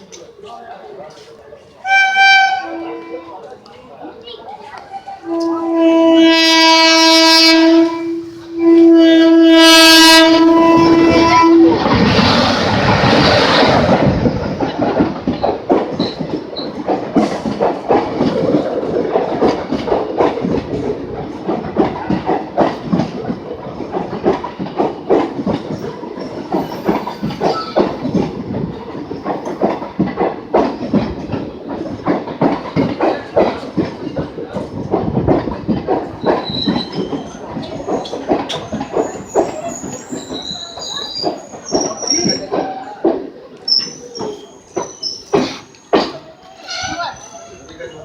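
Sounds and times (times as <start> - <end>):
train rushing past: 1.7 - 48.0
locomotive horn blasts: 1.8 - 3.3, 5.3 - 11.8
train wheels clattering over rail joints: 5.4 - 48.0.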